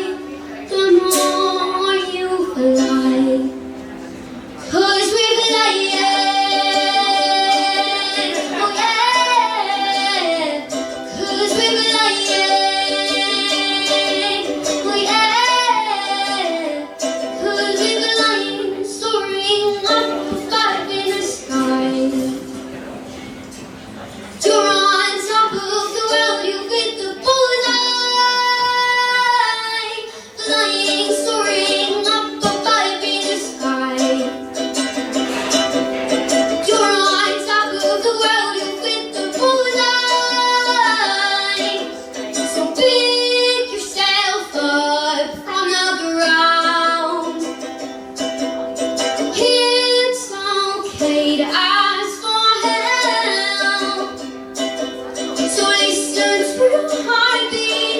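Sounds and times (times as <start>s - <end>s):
woman singing slow song: 0.0s - 3.6s, 4.6s - 22.4s, 36.6s - 47.6s, 49.3s - 54.4s
plucked acoustic strings: 0.0s - 57.9s.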